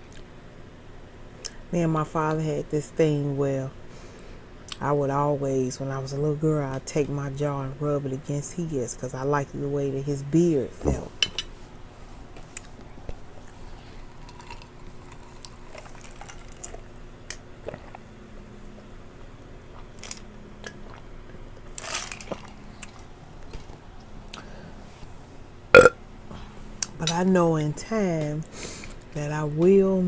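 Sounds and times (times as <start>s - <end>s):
chewing: 17.6s - 18.0s.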